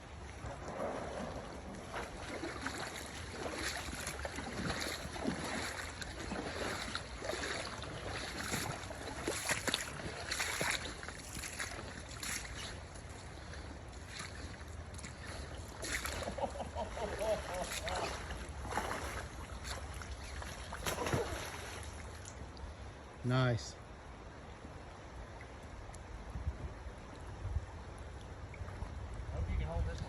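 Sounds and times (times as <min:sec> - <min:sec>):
water splashing: 0:00.0 - 0:22.9
river water running: 0:00.0 - 0:30.0.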